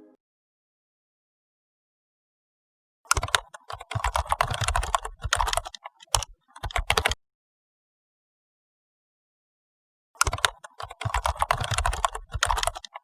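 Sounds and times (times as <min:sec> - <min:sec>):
rapid clicks and taps: 0:03.1 - 0:07.2, 0:10.2 - 0:13.0.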